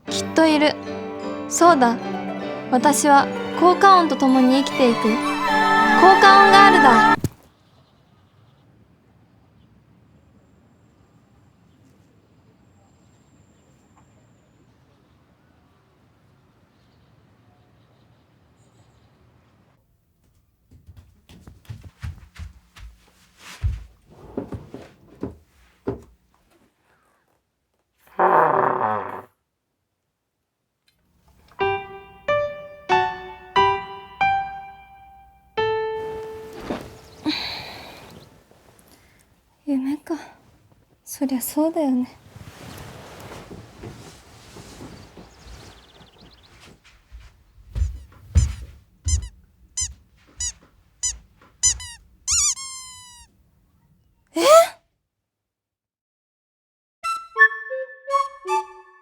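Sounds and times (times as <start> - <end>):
piano notes: 0.0 - 7.2, 31.5 - 38.2
buzzy comic blat: 49.1 - 53.3
cartoon squeaks: 49.1 - 53.3
squeak sliding down in pitch: 49.1 - 53.3.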